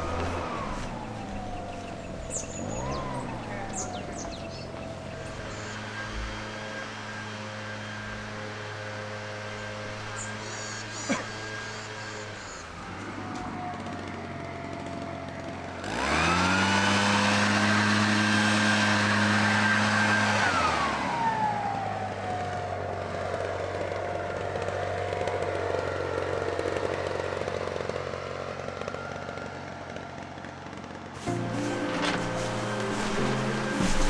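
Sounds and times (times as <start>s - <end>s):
motor running and winding down: 0.0s - 13.9s, 15.8s - 22.1s, 31.2s - 34.0s.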